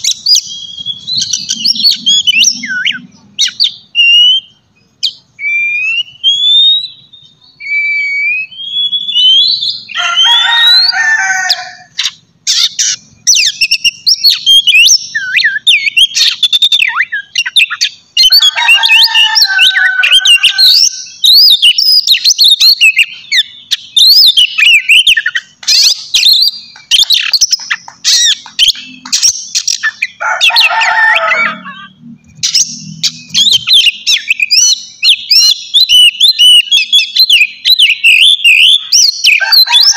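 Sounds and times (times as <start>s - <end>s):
bird rasping notes: 0.0s - 4.7s, 22.9s - 39.9s
songbird singing loudly: 0.0s - 39.9s.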